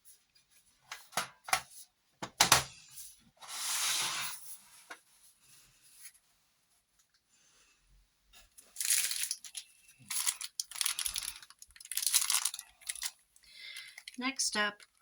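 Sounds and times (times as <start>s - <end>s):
packaging crinkling and tearing: 8.6s - 15.0s.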